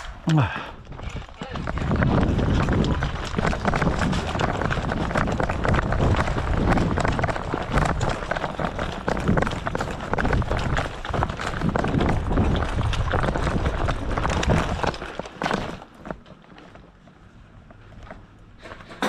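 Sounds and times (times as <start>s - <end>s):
microphone rumble: 0.0s - 15.0s
quick footsteps: 0.0s - 17.0s
gear rustling and knocking: 0.0s - 19.0s.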